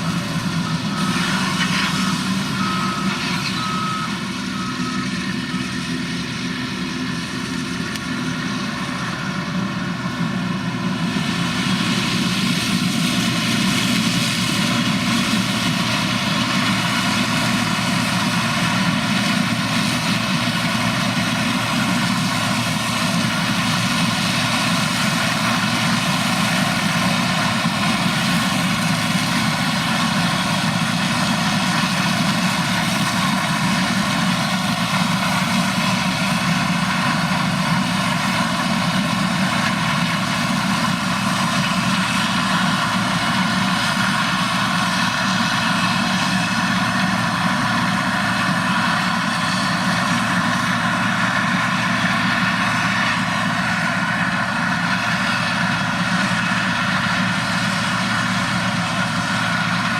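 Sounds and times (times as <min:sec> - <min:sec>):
reversing alarm beeping: 0:00.0 - 0:06.8
heavy farm machinery running: 0:00.0 - 0:59.9.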